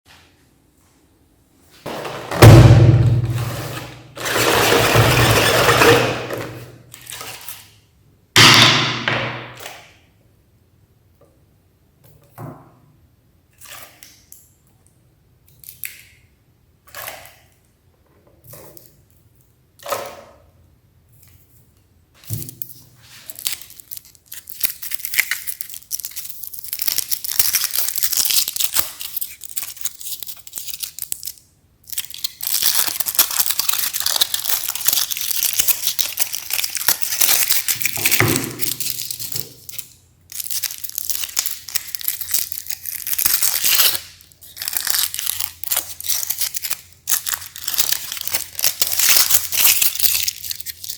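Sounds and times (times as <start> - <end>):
meat grinder crunching ice cream: 4.2 - 6.4, 32.0 - 39.7, 40.4 - 50.9.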